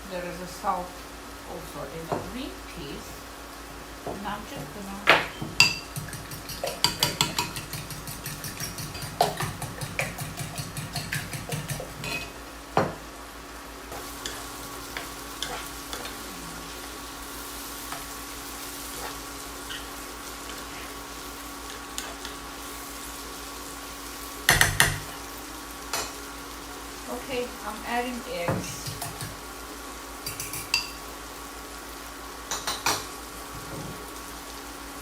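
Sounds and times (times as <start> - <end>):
peas frying in oil: 0.0 - 35.0
fork beating eggs in a bowl: 5.6 - 12.3, 14.2 - 16.2, 18.8 - 19.9, 20.5 - 22.4, 28.6 - 29.4, 30.2 - 30.9.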